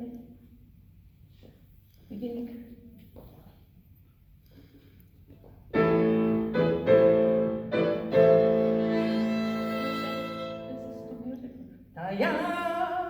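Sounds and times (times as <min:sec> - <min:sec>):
piano accompaniment: 0:05.7 - 0:11.4
violin playing: 0:06.3 - 0:11.4.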